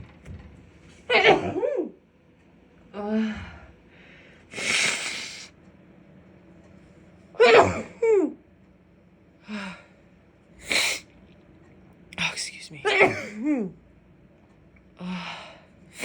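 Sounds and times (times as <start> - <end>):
woman sneezing: 1.1 - 1.9, 7.4 - 8.0, 12.8 - 13.7
breathy intake before sneeze: 4.6 - 5.5, 10.6 - 11.1.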